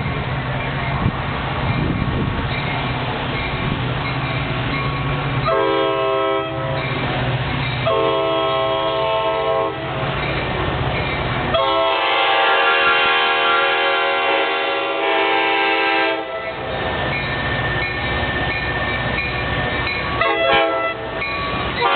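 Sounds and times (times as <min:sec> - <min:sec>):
low rumble of moving train: 0:00.0 - 0:21.9
train air horn blasts: 0:05.4 - 0:06.8, 0:07.8 - 0:10.0, 0:11.5 - 0:16.6, 0:20.2 - 0:21.2.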